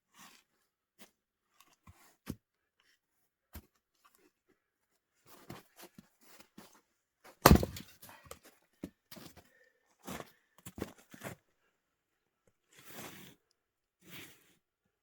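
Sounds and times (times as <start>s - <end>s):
axe striking firewood: 7.4s - 8.1s
wood knocks and crunches: 7.4s - 8.1s.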